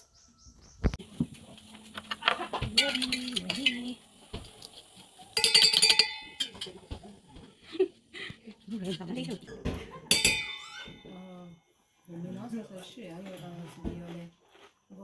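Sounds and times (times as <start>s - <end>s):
dishes clinking and knocking: 1.2s - 4.6s, 5.3s - 7.6s, 9.5s - 11.2s.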